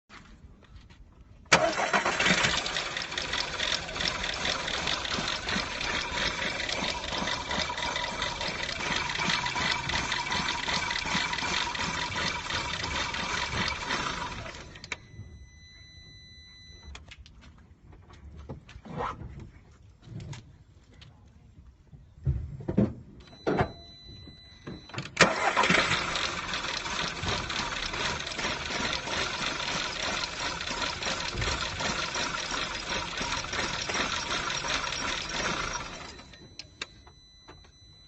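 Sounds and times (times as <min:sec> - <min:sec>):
car engine starting and running: 0:01.5 - 0:15.6, 0:23.2 - 0:38.0
steady beep: 0:03.6 - 0:17.0, 0:23.2 - 0:25.1, 0:30.8 - 0:38.0.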